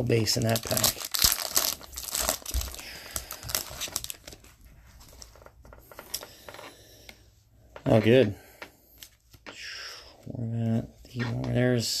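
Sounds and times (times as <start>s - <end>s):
foil wrapper crinkling and tearing: 0.0s - 4.4s.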